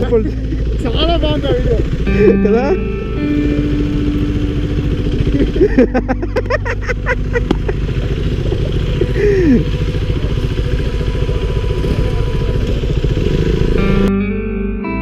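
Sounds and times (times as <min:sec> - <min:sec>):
background music: 0:00.0 - 0:08.6
motorcycle engine running: 0:00.0 - 0:14.1.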